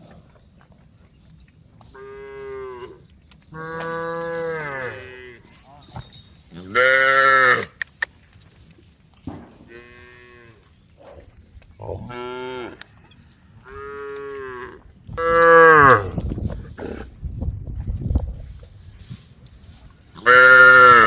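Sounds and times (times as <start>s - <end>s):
cows mooing: 1.9s - 5.7s, 13.6s - 17.1s, 20.2s - 21.0s.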